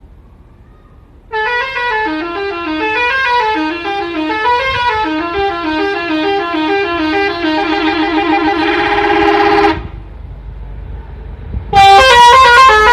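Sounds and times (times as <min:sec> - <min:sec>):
musical bus air horn melody: 0:01.3 - 0:10.0, 0:11.7 - 0:12.9.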